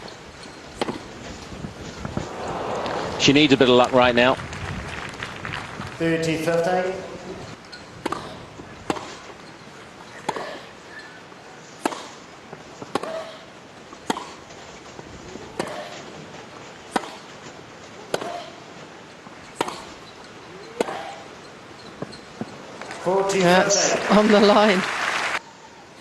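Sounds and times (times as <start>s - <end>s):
tennis racket hitting ball: 8.0s - 9.2s, 11.8s - 12.2s, 12.8s - 13.4s, 14.0s - 14.4s, 15.5s - 16.0s, 16.9s - 17.3s, 18.1s - 18.6s, 19.5s - 20.1s, 20.8s - 21.3s.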